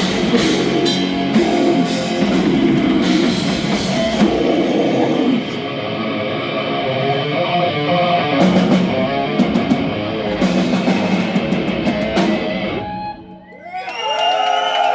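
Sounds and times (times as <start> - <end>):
death metal band playing: 0.0 - 13.5
crowd whistling and cheering: 11.9 - 14.9.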